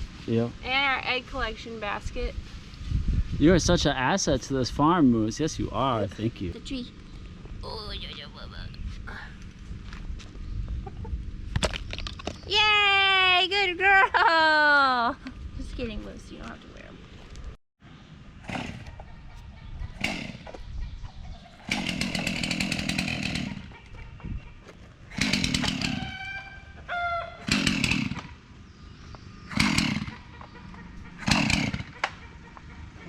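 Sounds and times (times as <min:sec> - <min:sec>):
chainsaw revving: 0:18.4 - 0:19.0, 0:20.0 - 0:20.5, 0:21.6 - 0:23.8, 0:25.1 - 0:26.3, 0:27.4 - 0:28.4, 0:29.5 - 0:30.3, 0:31.2 - 0:32.1.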